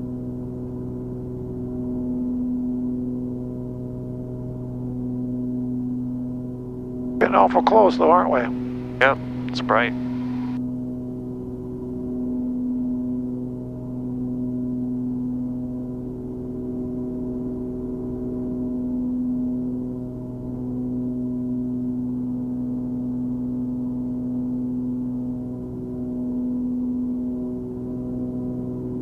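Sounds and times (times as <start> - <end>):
propeller plane engines droning: 0.0 - 11.9.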